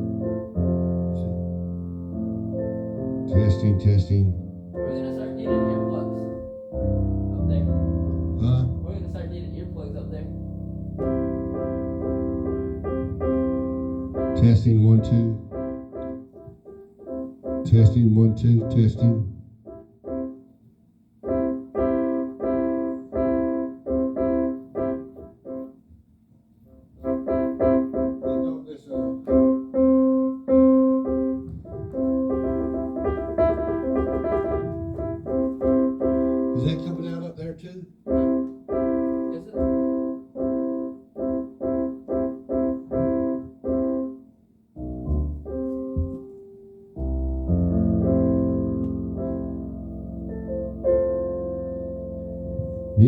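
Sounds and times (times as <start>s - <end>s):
piano chords on keyboard: 0.0s - 20.6s, 21.2s - 25.8s, 26.7s - 53.0s
deep bass: 47.1s - 53.0s.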